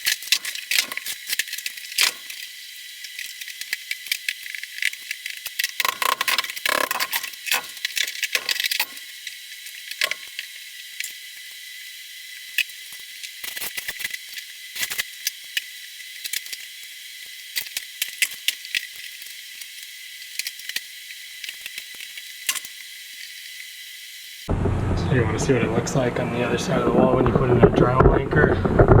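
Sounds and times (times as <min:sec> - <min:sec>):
clicks knocks and rattles of demolition: 0:00.0 - 0:02.4, 0:03.3 - 0:09.0.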